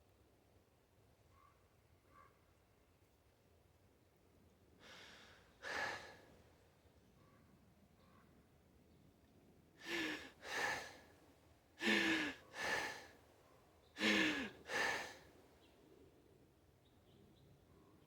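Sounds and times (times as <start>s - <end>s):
person crying breaths: 9.8s - 11.0s, 11.8s - 13.1s, 14.0s - 15.2s.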